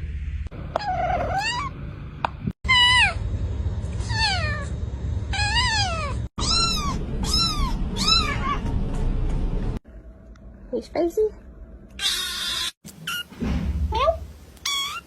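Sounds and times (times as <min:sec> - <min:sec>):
kitten meowing: 0:05.4 - 0:08.6, 0:12.0 - 0:13.2, 0:14.6 - 0:15.0.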